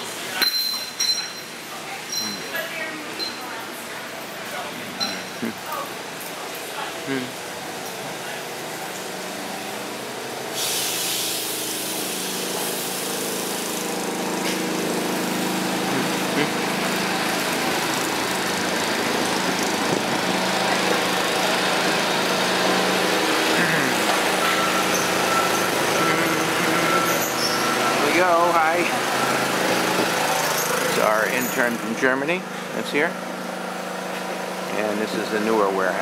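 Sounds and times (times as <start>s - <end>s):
small engine running: 10.6s - 36.0s.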